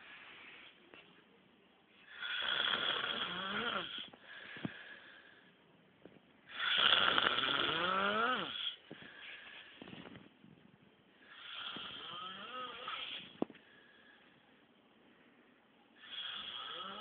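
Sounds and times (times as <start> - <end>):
soft breathing: 0.0 - 1.3, 3.8 - 5.8, 8.6 - 16.4
man snoring loudly: 2.1 - 4.1, 6.5 - 8.8, 11.3 - 13.2, 16.0 - 17.0.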